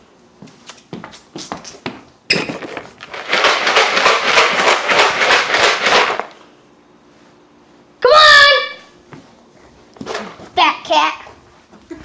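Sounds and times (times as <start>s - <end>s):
objects rattling and rustling: 2.3s - 6.5s, 9.7s - 10.6s.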